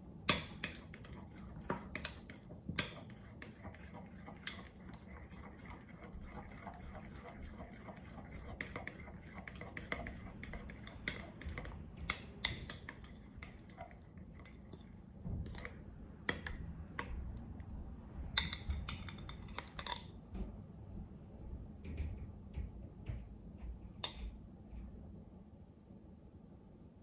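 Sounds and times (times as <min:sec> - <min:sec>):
utensil tapping against a bowl: 0:00.2 - 0:14.6, 0:15.4 - 0:17.4, 0:18.4 - 0:20.1, 0:24.0 - 0:24.4.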